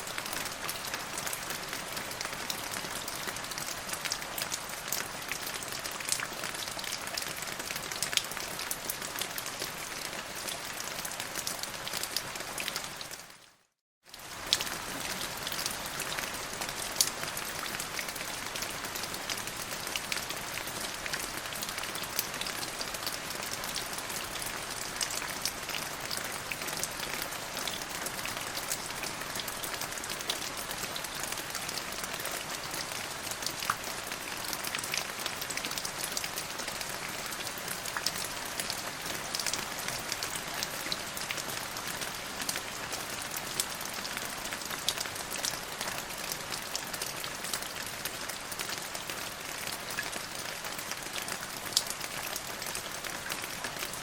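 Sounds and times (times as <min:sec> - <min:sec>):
steady rain: 0:00.0 - 0:54.0
raindrops ticking on a surface: 0:14.1 - 0:54.0.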